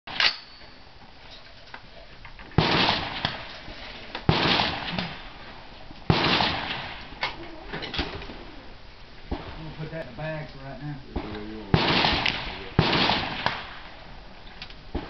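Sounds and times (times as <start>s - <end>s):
rifle shots echoing: 2.6s - 8.6s, 9.3s - 9.9s, 11.1s - 14.2s.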